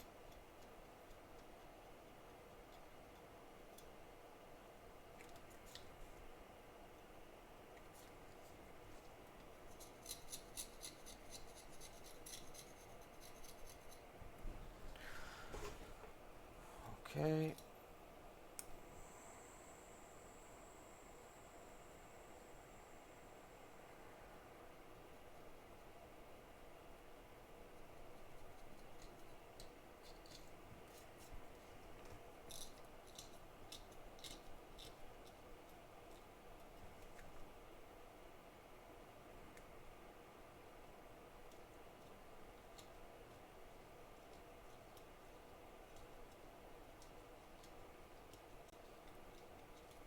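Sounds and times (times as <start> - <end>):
small blade scraping chip: 9.7 - 14.0.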